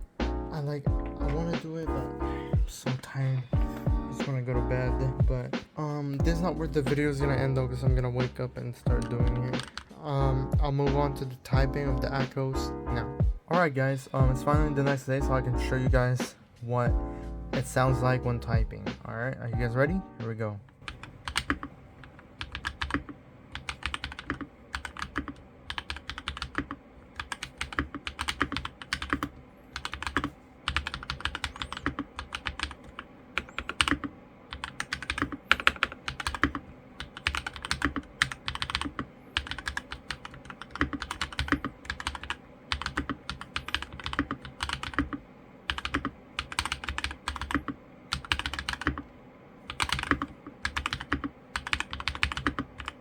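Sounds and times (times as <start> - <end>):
mechanical keyboard typing: 8.9 - 9.9, 20.7 - 49.1, 49.7 - 53.0.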